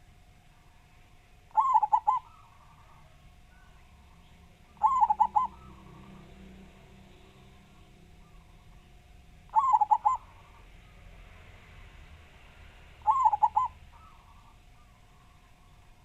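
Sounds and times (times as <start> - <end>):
dove cooing: 1.5 - 6.6, 7.2 - 8.8, 9.5 - 10.7, 13.0 - 16.0.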